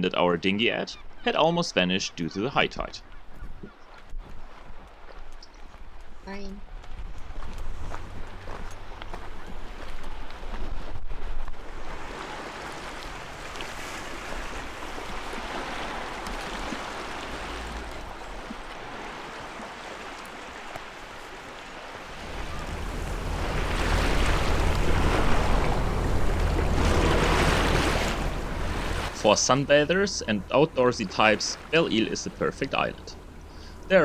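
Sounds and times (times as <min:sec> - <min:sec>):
wind on microphone: 0:05.8 - 0:12.4, 0:22.0 - 0:29.2
sea waves washing on shore: 0:07.4 - 0:34.0
heavy low rumble: 0:22.0 - 0:34.0.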